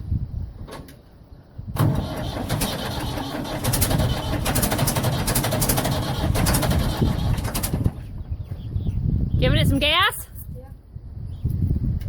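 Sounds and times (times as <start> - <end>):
diesel engine cold start: 1.7 - 8.2.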